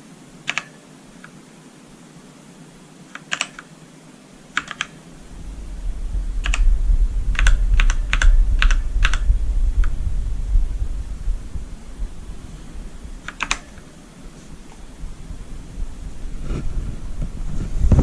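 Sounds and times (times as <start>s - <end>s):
mechanical keyboard clacks: 0.5s - 0.8s, 3.1s - 3.7s, 4.6s - 5.0s, 6.4s - 6.7s, 7.3s - 10.0s, 13.2s - 13.9s
low rumble: 5.2s - 18.0s.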